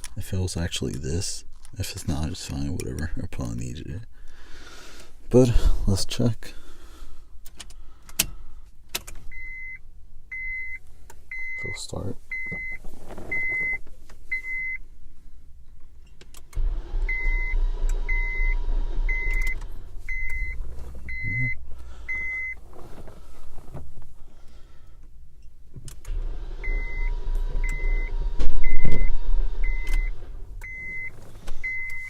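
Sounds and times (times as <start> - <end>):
dashboard warning chime beeping: 9.3 - 14.8, 16.6 - 22.6, 26.1 - 32.0
starter motor cranking engine: 16.6 - 22.8, 26.0 - 32.0.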